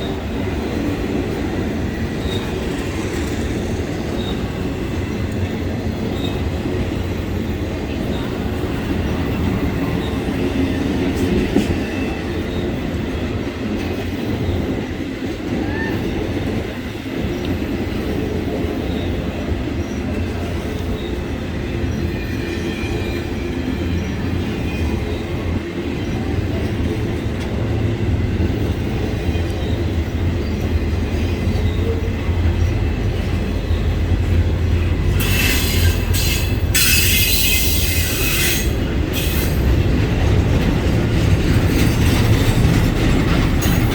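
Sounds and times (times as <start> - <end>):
freight train wheels rumbling: 0.0 - 43.9
faint wheel squeal: 35.2 - 39.6
loud harsh hiss: 35.2 - 39.6.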